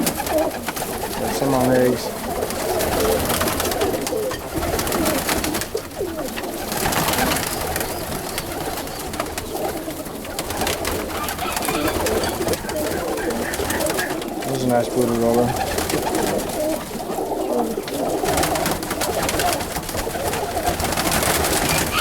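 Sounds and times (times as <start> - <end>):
pigeons cooing: 0.0 - 22.0
rustling: 0.0 - 22.0.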